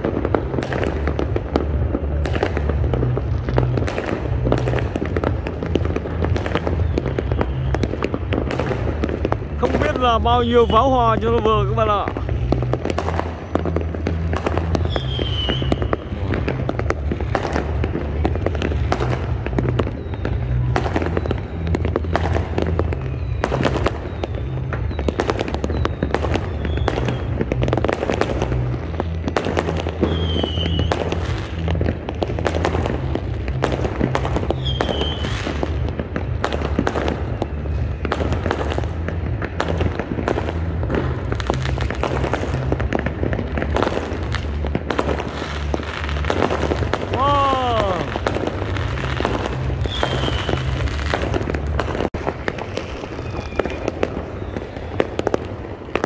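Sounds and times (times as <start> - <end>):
fireworks bangs and crackles: 0.0 - 56.0
fireworks whistles: 0.0 - 56.0.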